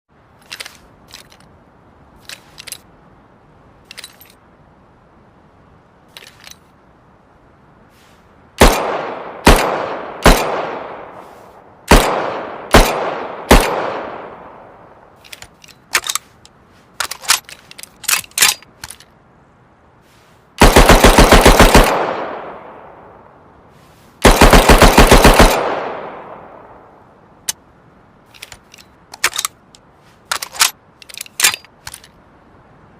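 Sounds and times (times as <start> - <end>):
submachine gun single shots: 8.6 - 11.1, 11.9 - 14.4, 20.6 - 22.6, 24.2 - 26.4
full-auto gun bursts: 20.6 - 22.4, 24.2 - 26.0
light mechanical clicks: 28.2 - 32.3.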